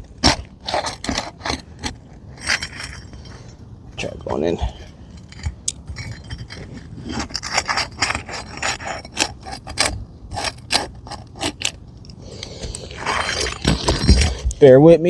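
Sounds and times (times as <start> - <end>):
tool scraping under roof shingle: 0.0 - 14.6.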